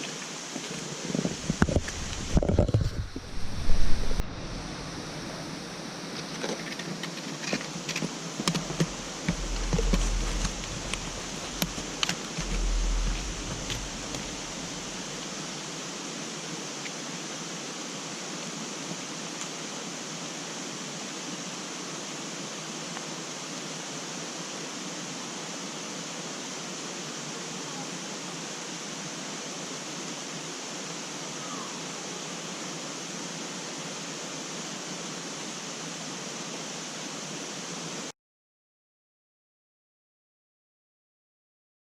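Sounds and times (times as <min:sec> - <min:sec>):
mountain creek rushing: 0:00.0 - 0:38.1
low bumps: 0:08.4 - 0:15.5.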